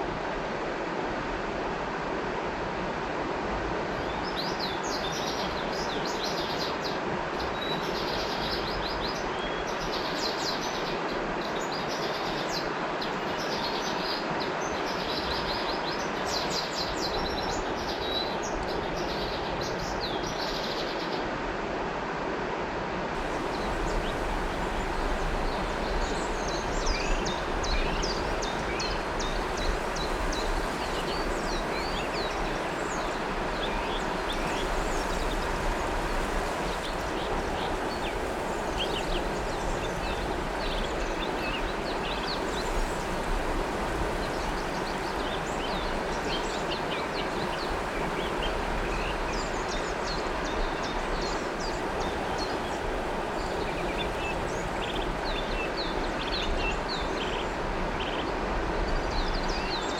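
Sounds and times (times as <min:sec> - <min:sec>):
river water flowing: 0:00.0 - 0:59.9
birds chirping: 0:23.2 - 0:43.0.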